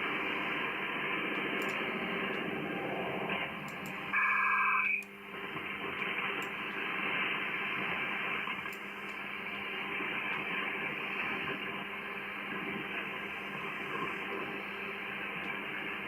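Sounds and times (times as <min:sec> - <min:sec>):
radio static hiss: 0:00.0 - 0:16.0
warbling data tones: 0:02.5 - 0:05.0.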